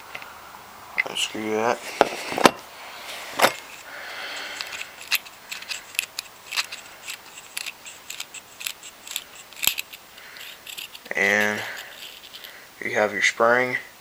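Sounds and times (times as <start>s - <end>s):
light scraping: 1.0s - 12.7s
small metal clicks: 3.4s - 12.6s.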